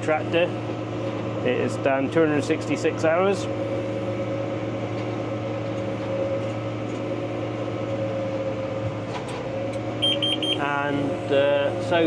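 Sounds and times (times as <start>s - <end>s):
tractor diesel engine droning: 0.0s - 12.0s.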